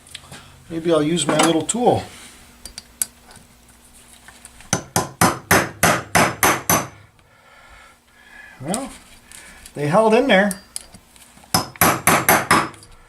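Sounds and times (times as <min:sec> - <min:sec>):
hammer tapping on metal tool: 0:04.7 - 0:07.0, 0:11.5 - 0:12.9.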